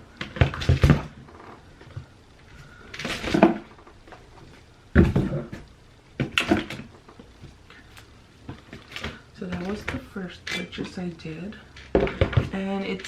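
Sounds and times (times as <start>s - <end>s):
plastic bottles knocking in a box: 11.9s - 12.6s.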